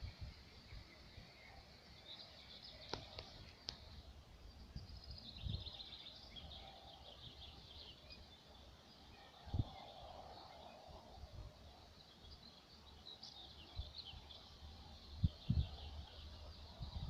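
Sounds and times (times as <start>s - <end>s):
faint songbirds chirping: 0.0s - 17.0s.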